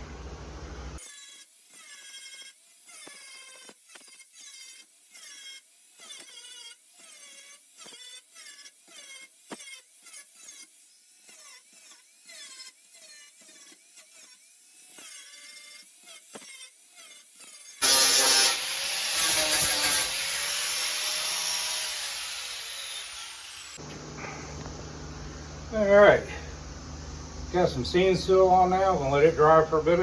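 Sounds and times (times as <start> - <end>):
grinder grinding metal: 1.0 - 23.9.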